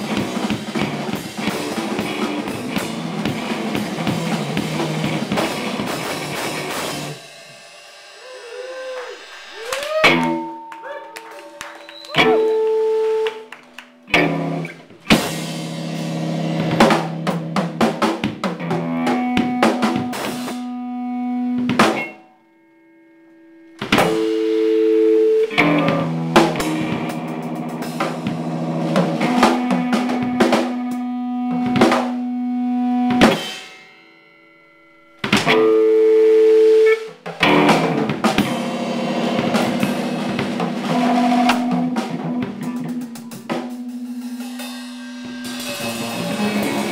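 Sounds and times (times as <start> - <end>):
snare and bass drum: 0.0 - 7.2, 36.9 - 43.8
band playing: 0.0 - 22.2, 23.6 - 33.8, 35.1 - 46.9.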